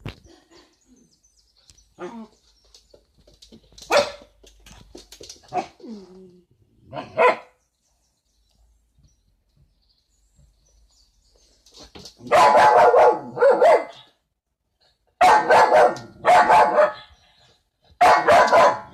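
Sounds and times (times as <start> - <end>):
dog barking: 3.9 - 4.3, 6.9 - 7.6, 12.2 - 14.1, 15.2 - 17.1, 18.0 - 18.9.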